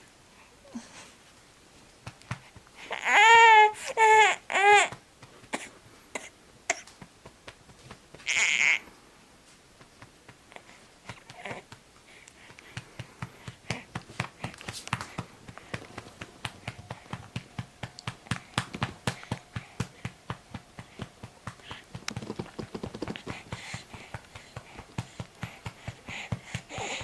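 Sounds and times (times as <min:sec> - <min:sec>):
baby crying: 0:02.9 - 0:05.0, 0:08.3 - 0:08.8
hand patting baby's back: 0:12.7 - 0:27.0.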